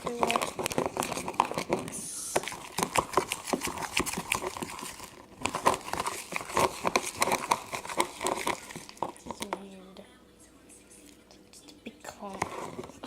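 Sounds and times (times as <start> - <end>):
sticky slime clicking and crackling: 0.0 - 9.7.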